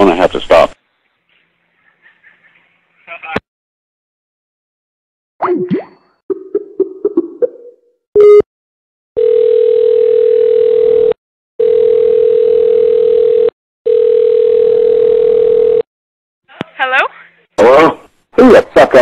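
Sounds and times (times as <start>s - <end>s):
steady telephone tone: 9.2s - 15.9s.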